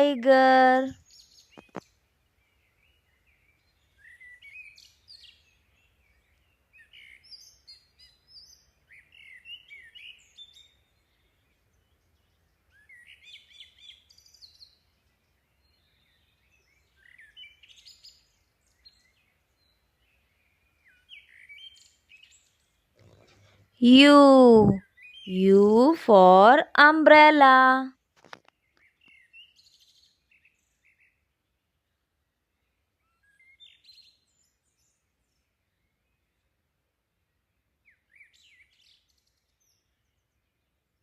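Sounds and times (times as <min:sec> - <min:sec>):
faint bird chirping: 0:00.0 - 0:27.8.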